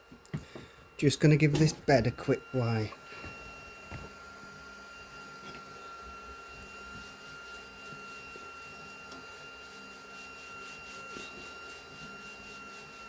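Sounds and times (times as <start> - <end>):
printer fan hum: 0.0 - 6.9
constant high whine: 0.0 - 13.0.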